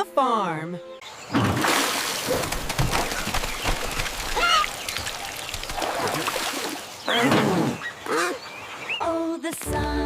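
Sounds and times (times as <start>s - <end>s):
water pattering and splashing: 1.3s - 7.3s.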